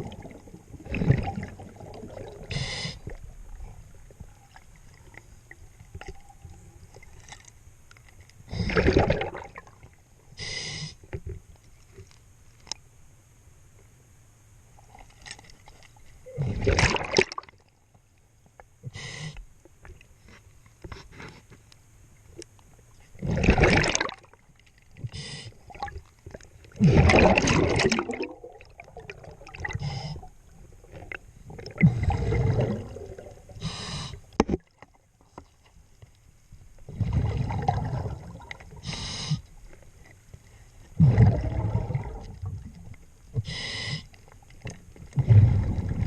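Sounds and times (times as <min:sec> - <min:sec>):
exhaled bubbles rushing: 0:00.0 - 0:02.5, 0:08.6 - 0:09.9, 0:16.4 - 0:17.5, 0:23.2 - 0:24.3, 0:26.7 - 0:29.9, 0:30.8 - 0:33.6, 0:36.9 - 0:38.8, 0:41.0 - 0:42.8, 0:45.1 - 0:46.0.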